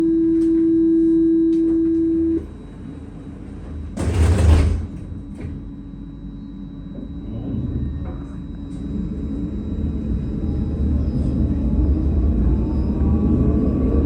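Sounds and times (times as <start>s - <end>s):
door-closing warning buzzer: 0.0s - 2.6s, 3.8s - 10.2s.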